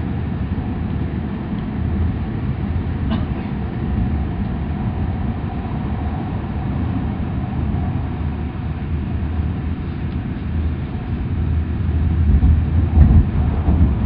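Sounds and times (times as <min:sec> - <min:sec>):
train rumble inside carriage: 0:00.0 - 0:14.0.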